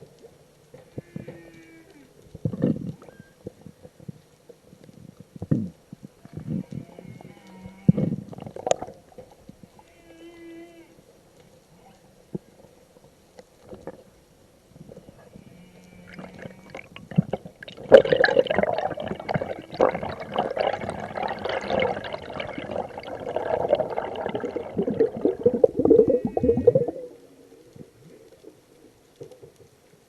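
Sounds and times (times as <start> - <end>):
whale calling: 21.4 - 27.8.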